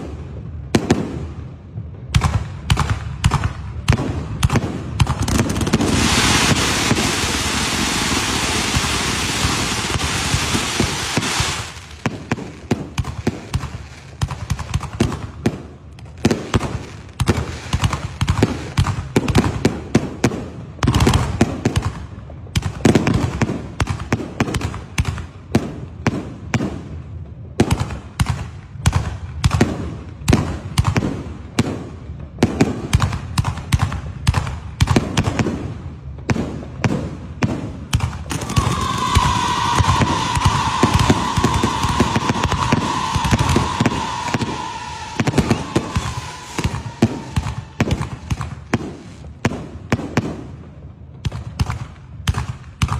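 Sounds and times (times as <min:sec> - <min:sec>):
firecrackers banging: 0:00.0 - 0:52.9
fireworks hissing spray: 0:05.8 - 0:12.6, 0:38.4 - 0:49.2.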